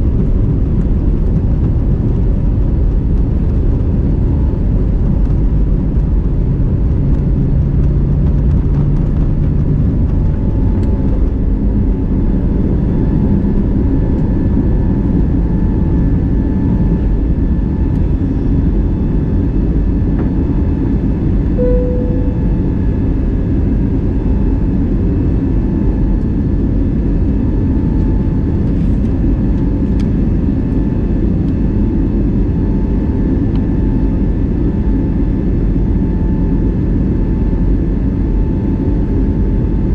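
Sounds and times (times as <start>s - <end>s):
faint steady hums: 0.0s - 24.2s
airliner cabin rumble: 0.0s - 39.9s
short single tone: 21.6s - 23.2s.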